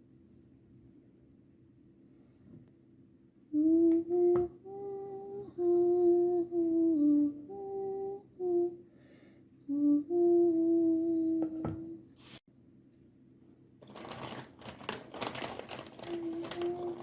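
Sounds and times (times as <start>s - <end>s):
person humming a slow melody: 3.5s - 8.9s, 9.6s - 12.2s, 16.0s - 17.0s.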